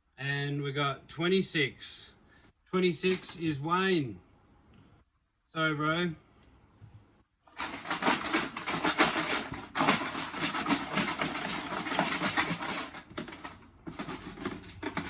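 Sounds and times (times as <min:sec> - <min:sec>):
tickets rattling in container: 0:07.6 - 0:15.0.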